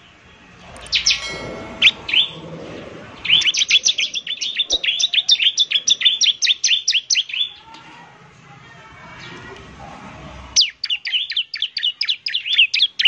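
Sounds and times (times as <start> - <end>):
bird chirping: 0.0 - 7.8, 10.5 - 13.0.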